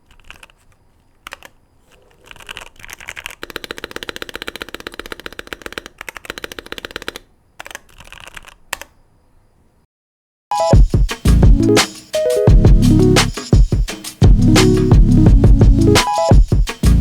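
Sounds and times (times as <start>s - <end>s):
mechanical keyboard typing: 0.0s - 8.9s.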